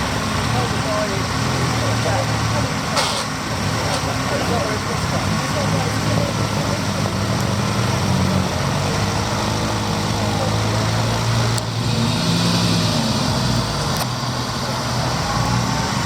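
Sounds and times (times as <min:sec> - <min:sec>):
car engine running: 0:00.0 - 0:16.0.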